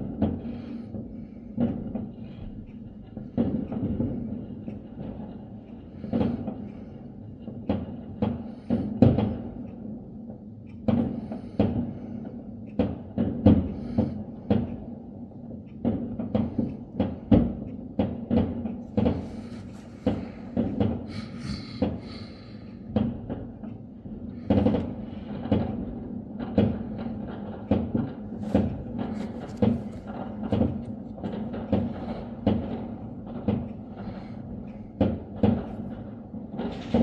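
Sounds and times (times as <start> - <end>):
fireworks bangs and thuds: 15.8 - 23.6, 24.4 - 34.3, 35.0 - 37.0.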